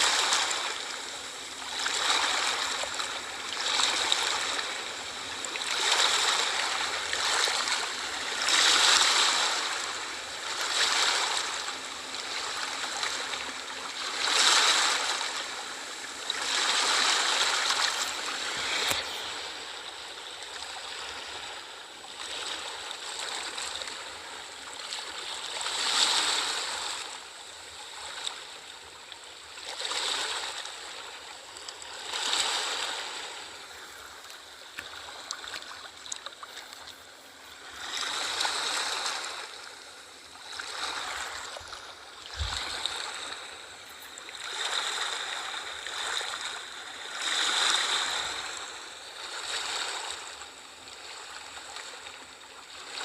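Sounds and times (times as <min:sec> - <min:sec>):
small waves washing: 0:00.0 - 0:53.0.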